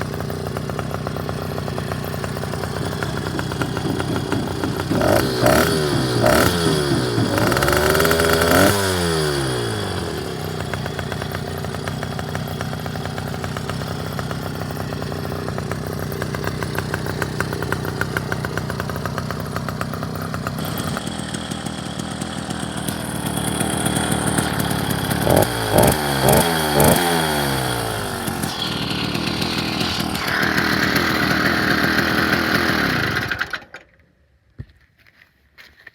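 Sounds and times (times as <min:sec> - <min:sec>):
two-stroke engine running: 0:00.0 - 0:33.9.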